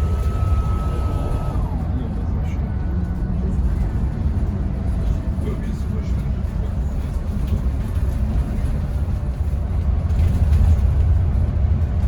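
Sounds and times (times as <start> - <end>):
bus engine rumble: 0.0 - 12.0
road noise: 0.0 - 12.0.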